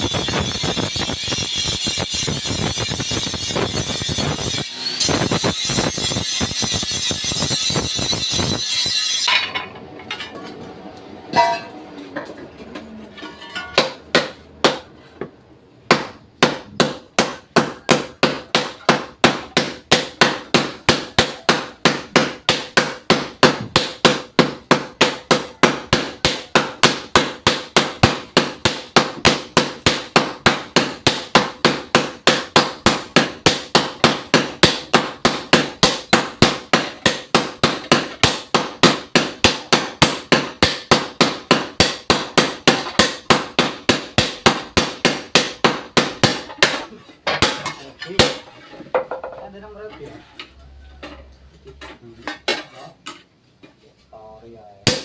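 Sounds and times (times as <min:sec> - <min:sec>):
grinder hissing on metal: 0:00.0 - 0:09.3
ringing hammer blows: 0:00.0 - 0:09.7.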